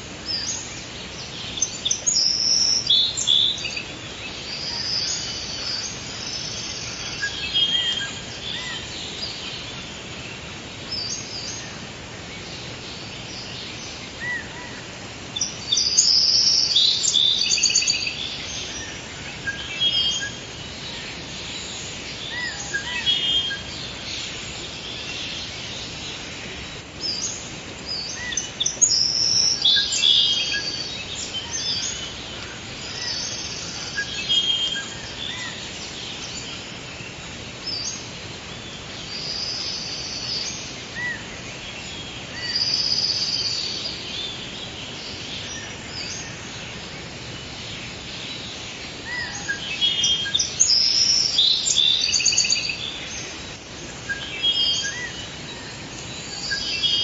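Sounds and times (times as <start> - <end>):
background hiss: 0.0 - 57.0
birds chirping and trilling: 0.0 - 57.0.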